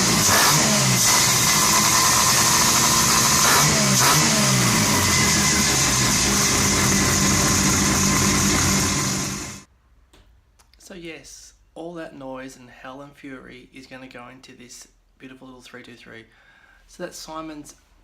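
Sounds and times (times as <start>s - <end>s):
rotary engine revving: 0.0s - 9.7s.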